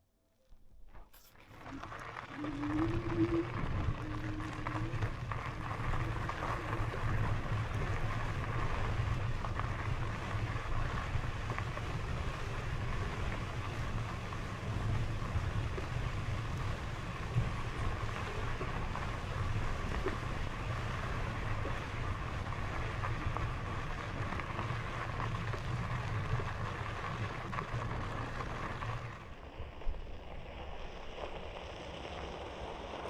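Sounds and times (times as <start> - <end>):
faint steady whine: 0.0 - 33.0
short low tone: 0.3 - 7.0
e-bike rolling on trail: 0.7 - 33.0
wind on microphone: 1.7 - 24.5.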